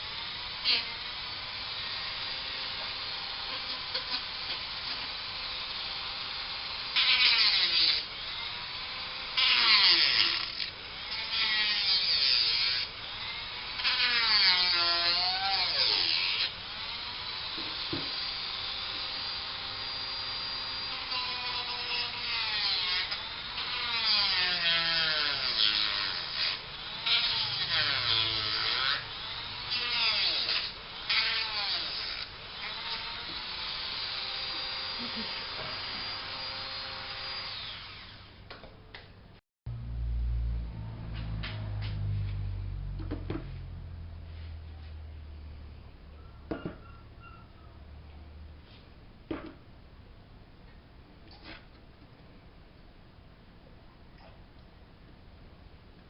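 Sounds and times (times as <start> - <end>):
power tool motor whine: 0.0 - 38.4
harsh grinding noise: 24.4 - 38.1.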